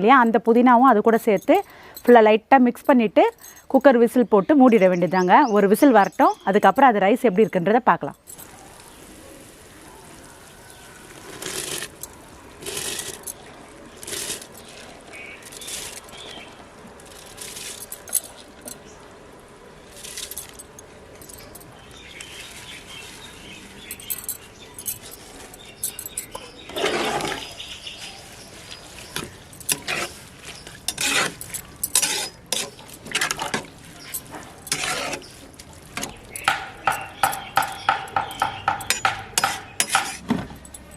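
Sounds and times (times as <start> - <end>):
metal spoon scraping a pot: 11.3 - 13.3, 14.0 - 14.7, 26.0 - 27.6, 29.0 - 40.3.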